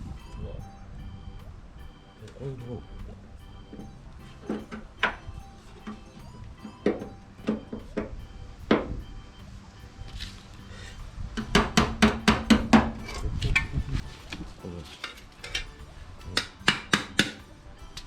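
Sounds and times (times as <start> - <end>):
hammer clinking on sheet steel: 14.9 - 18.0.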